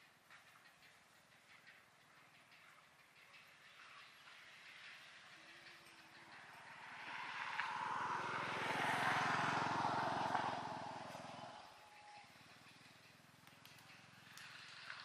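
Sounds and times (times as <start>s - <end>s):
motor vehicle passing by: 4.0s - 15.0s.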